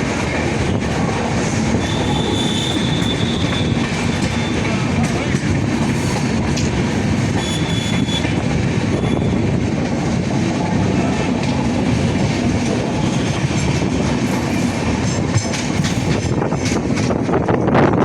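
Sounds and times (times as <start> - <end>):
train rumbling on tracks: 0.0 - 18.0
wheels clattering over rail: 0.1 - 18.0
high wheel squeal: 1.8 - 4.7.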